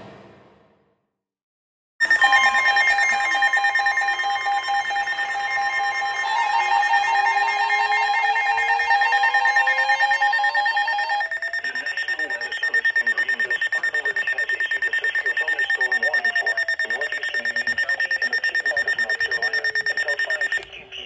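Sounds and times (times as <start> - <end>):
rapid electronic beeping: 2.0 - 20.8
steady alert tone: 9.3 - 20.6.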